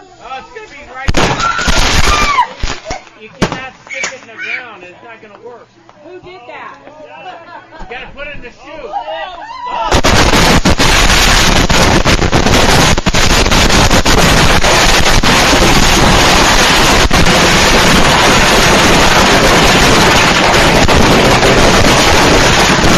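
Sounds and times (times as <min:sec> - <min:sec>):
firecrackers crackling: 0:00.6 - 0:04.3, 0:09.8 - 0:22.9
sharp firecracker bangs: 0:01.0 - 0:03.7, 0:09.9 - 0:22.9.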